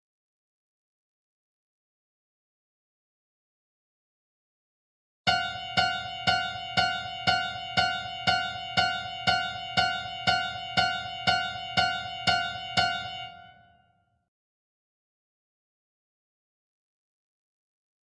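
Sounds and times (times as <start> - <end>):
high piano note struck: 5.3 - 13.8.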